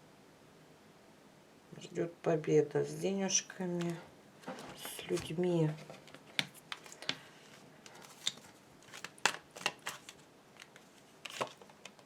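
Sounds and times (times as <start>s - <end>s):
cards snapping and tapping: 8.1s - 12.0s.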